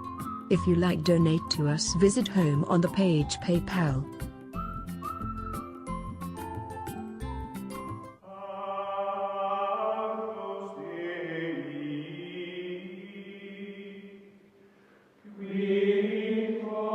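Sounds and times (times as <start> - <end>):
choir-like background music: 7.2 - 14.5, 15.2 - 16.9.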